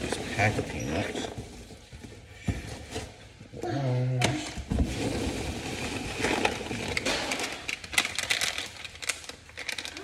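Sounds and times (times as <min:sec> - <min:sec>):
packaging crinkling and rustling: 0:04.7 - 0:10.0.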